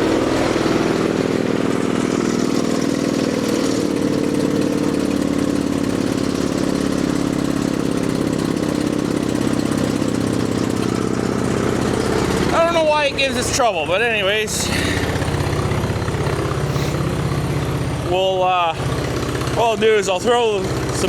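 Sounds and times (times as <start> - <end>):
gasoline engine running: 0.0 - 21.0.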